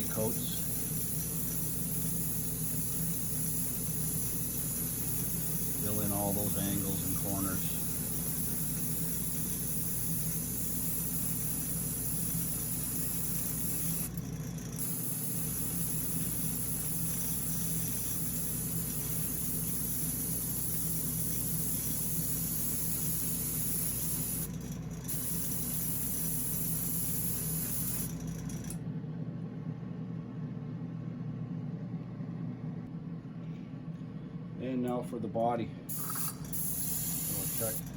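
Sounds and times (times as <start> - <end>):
spray paint hissing: 0.0 - 28.2, 35.9 - 37.9.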